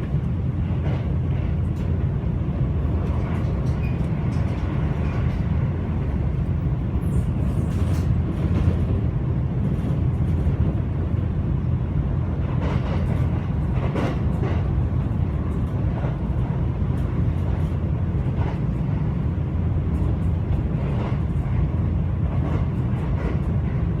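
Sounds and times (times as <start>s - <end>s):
train rumbling inside carriage: 0.0s - 24.0s
faint train clicks: 2.9s - 10.9s, 12.3s - 19.2s, 19.8s - 24.0s.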